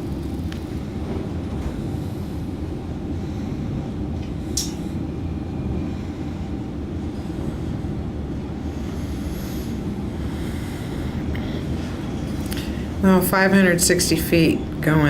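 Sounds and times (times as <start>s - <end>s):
elevator low rumble: 0.0s - 15.0s.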